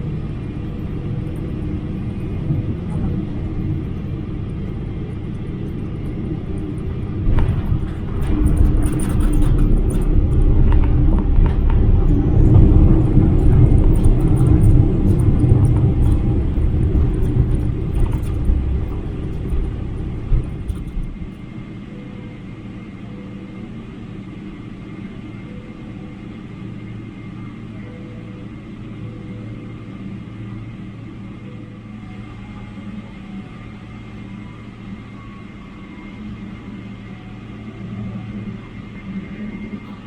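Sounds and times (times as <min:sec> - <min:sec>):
airplane cabin rumble: 0:00.0 - 0:40.0
light rattles: 0:05.2 - 0:21.6.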